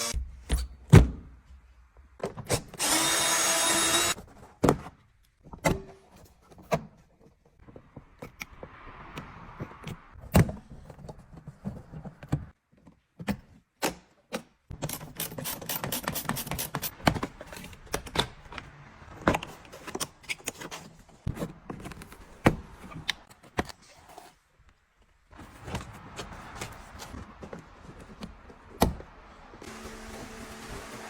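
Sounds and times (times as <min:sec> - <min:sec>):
small motor humming: 0:02.8 - 0:04.2.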